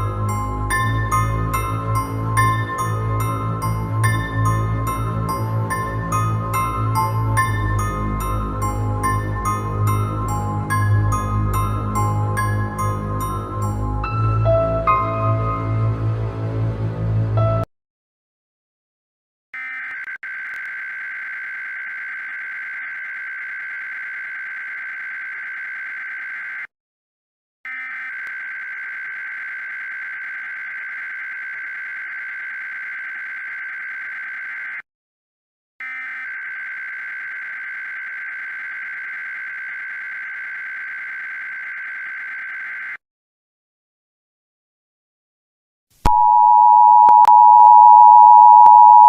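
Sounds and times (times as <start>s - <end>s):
high-pitched digital data tone: 46.1s - 49.0s.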